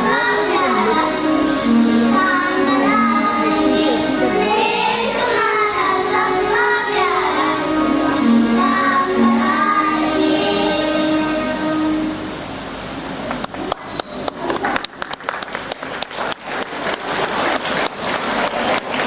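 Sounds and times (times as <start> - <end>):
children singing: 0.0 - 12.4
instrumental music: 0.0 - 13.2.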